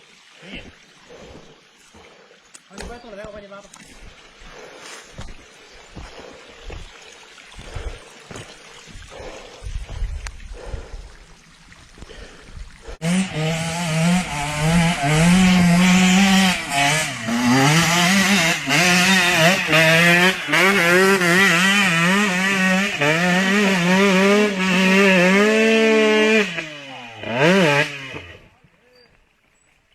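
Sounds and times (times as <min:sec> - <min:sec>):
motorcycle engine revving: 0:12.9 - 0:28.5.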